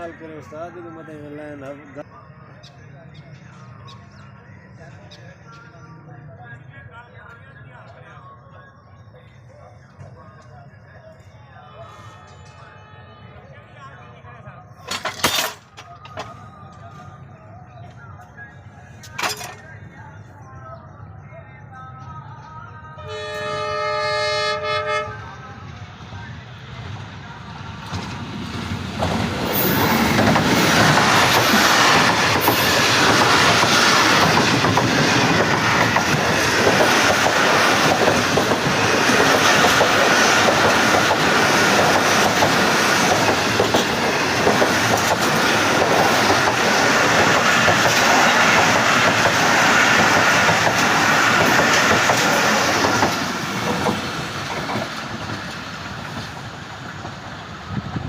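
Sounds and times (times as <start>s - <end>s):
train wheels rushing over rails: 26.8s - 58.0s.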